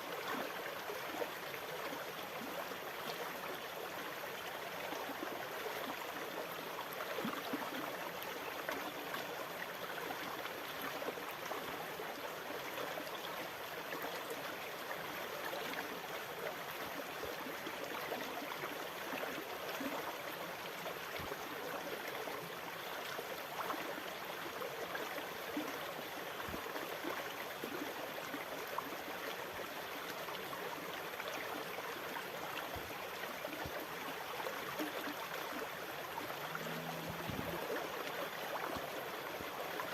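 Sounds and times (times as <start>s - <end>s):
water running and gurgling: 35.4s - 39.5s.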